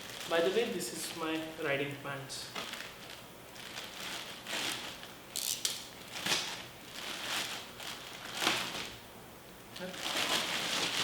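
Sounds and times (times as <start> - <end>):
packaging rustling and tearing: 0.0 - 0.8, 2.5 - 9.0, 9.8 - 11.0.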